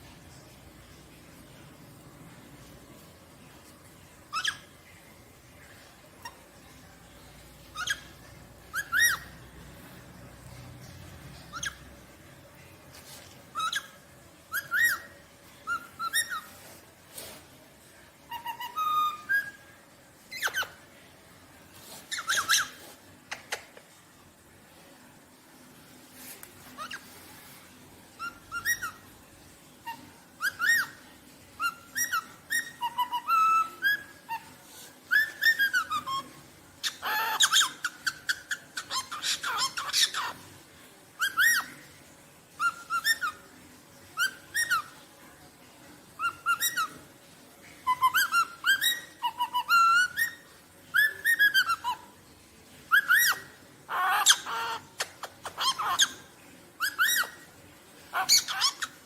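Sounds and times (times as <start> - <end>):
rosellas whistling: 7.7 - 9.5, 13.5 - 16.6
harsh bird calls: 52.9 - 57.4, 58.1 - 59.0.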